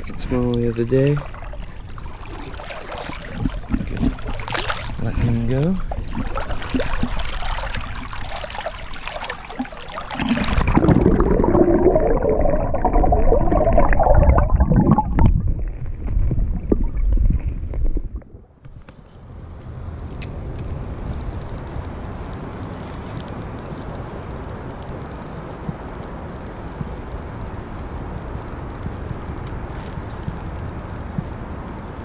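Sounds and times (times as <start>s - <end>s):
muffled gurgling with low rumble: 0.0s - 8.3s, 9.7s - 18.6s
steady wash of water: 0.0s - 18.2s
water splashing: 0.0s - 18.6s.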